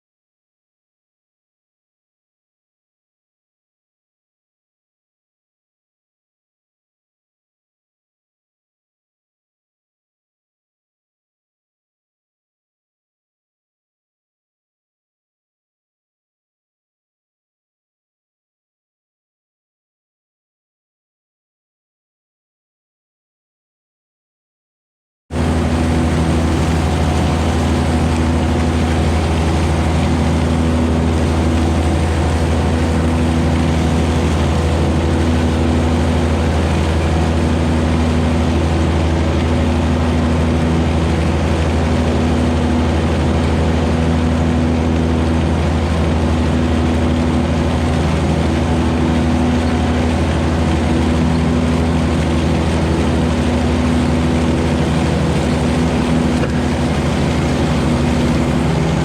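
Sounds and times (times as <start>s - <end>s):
tractor diesel engine running: 25.4s - 59.0s.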